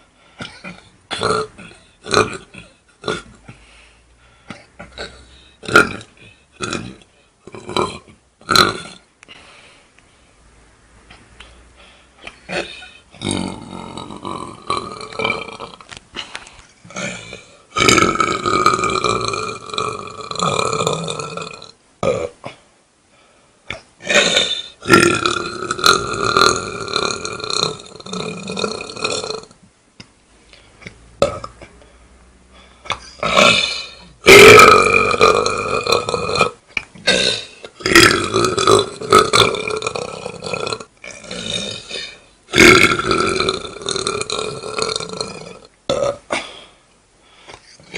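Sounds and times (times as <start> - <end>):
loud drawn-out belches: 0.4 - 3.4, 4.6 - 9.1, 12.4 - 15.9, 16.9 - 22.4, 23.7 - 29.6, 31.2 - 31.7, 32.9 - 46.3.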